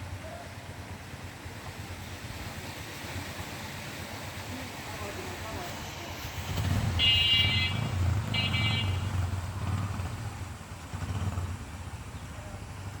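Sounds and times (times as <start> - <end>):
vehicle horn blasts: 7.0 - 9.2.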